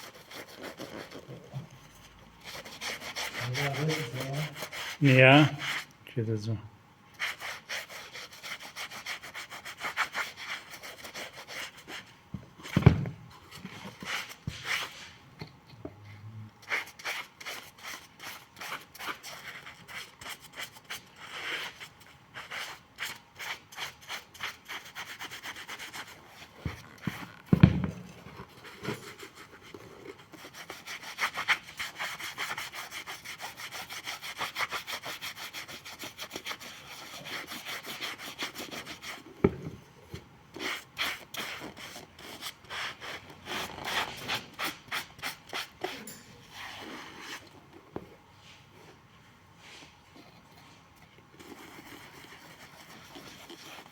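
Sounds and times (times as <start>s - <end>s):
shoe sole being scraped: 0.0s - 1.4s, 2.4s - 5.0s, 7.2s - 12.1s, 51.4s - 53.9s.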